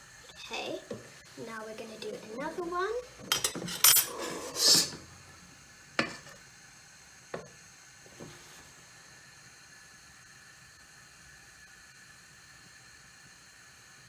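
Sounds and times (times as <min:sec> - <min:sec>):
spoons scraping a bowl: 0:03.2 - 0:05.1.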